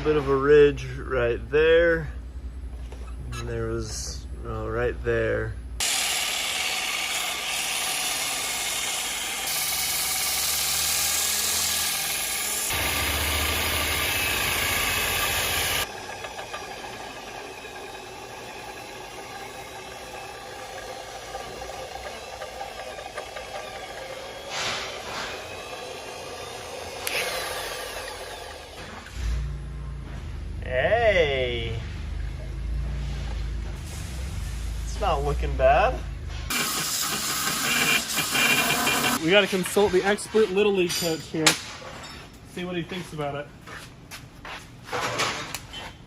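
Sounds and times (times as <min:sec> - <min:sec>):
high-pressure water jet hissing: 0:05.8 - 0:15.9, 0:36.5 - 0:39.2
machine running with whining tones: 0:05.8 - 0:30.6, 0:36.5 - 0:39.2.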